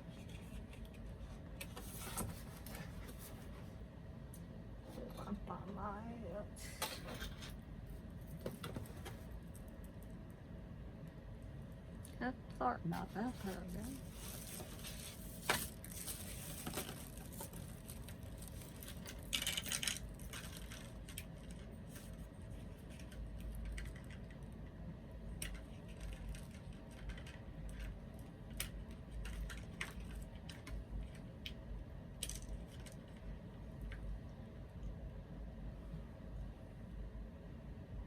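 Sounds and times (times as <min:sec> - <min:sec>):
packaging crinkling rustle: 0:13.3 - 0:23.9.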